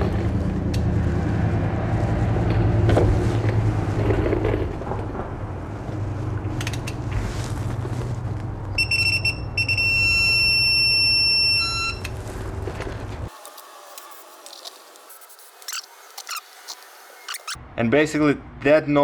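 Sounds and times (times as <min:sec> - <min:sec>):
torque wrench beeping: 0:13.4 - 0:17.6.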